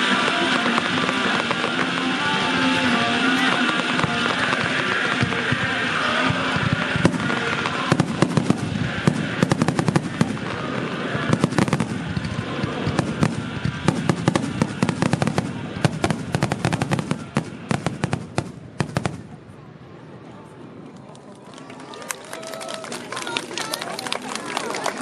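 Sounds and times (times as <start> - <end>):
music: 0.0 - 9.6
fireworks crackling: 0.0 - 19.6, 20.8 - 25.0.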